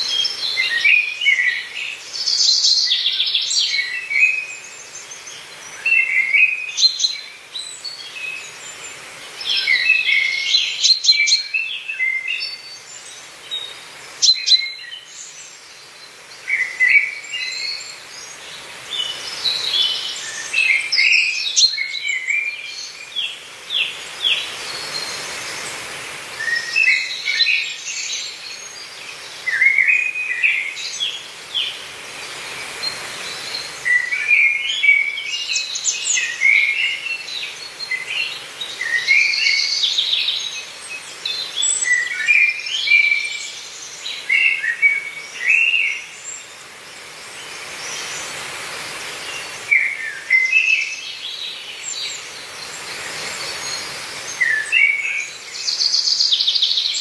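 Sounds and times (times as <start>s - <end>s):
faint steady hiss: 0.0s - 57.0s
songbirds chirping and singing: 0.0s - 57.0s.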